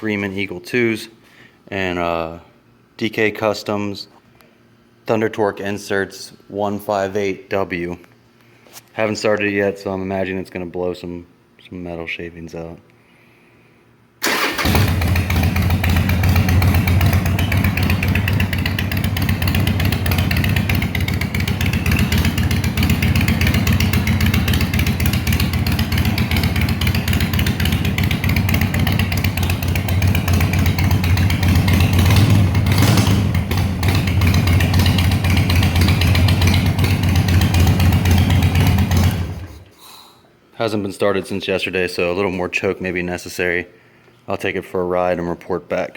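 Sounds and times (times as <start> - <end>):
motorcycle engine starting and running: 14.2 - 39.6.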